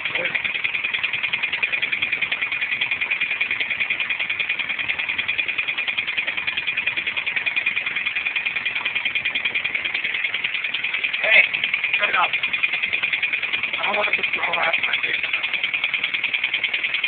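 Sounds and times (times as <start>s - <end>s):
car engine with rapid knock: 0.0s - 17.0s.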